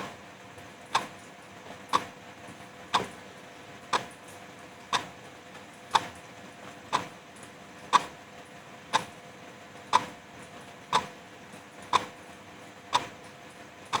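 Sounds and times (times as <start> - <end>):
wall clock ticking: 0.9 - 1.1, 1.9 - 2.1, 2.9 - 3.1, 3.9 - 4.1, 5.9 - 6.2, 6.9 - 7.1, 7.9 - 8.2, 8.9 - 9.1, 9.9 - 10.1, 11.9 - 12.1, 12.9 - 13.1.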